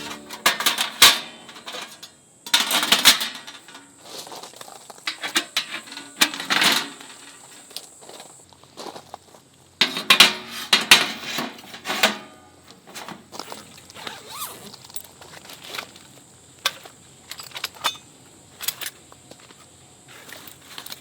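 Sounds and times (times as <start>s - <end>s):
clicks and knocks: 0.0s - 3.9s, 5.1s - 7.7s
metallic rattling and clinking: 0.0s - 4.1s, 5.1s - 7.8s.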